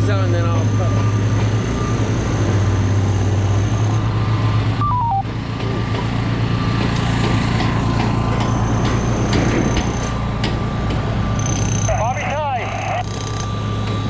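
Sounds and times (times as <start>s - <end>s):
heavy machinery drone: 0.0s - 14.0s
descending electronic beep: 4.8s - 5.3s.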